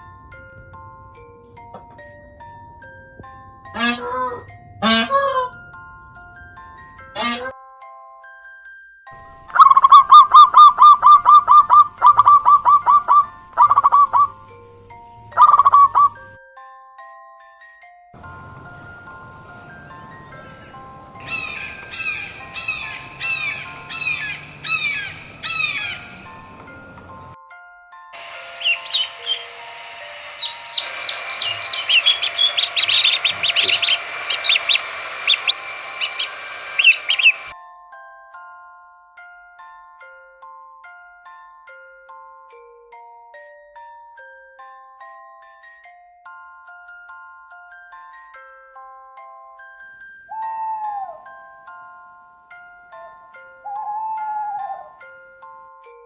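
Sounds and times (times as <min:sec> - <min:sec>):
bird chirping: 0:09.4 - 0:16.4, 0:18.4 - 0:26.9, 0:28.2 - 0:37.5.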